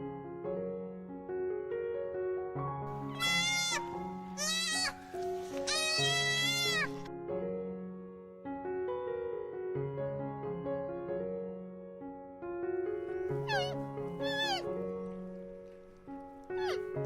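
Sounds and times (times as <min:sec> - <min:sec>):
soft piano music: 0:00.0 - 0:17.0
goat bleating: 0:03.0 - 0:07.1, 0:13.4 - 0:14.7, 0:16.5 - 0:17.0.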